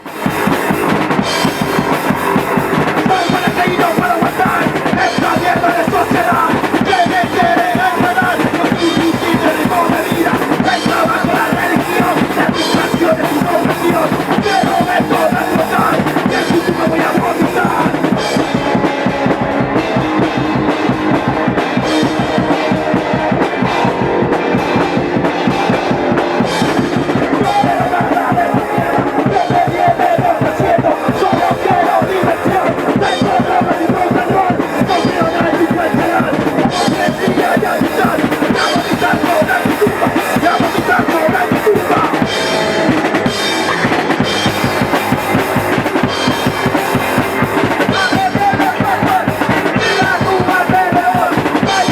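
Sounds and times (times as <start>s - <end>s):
drum kit pounding a beat: 0.0s - 51.9s
punk rock band playing live: 0.0s - 51.9s.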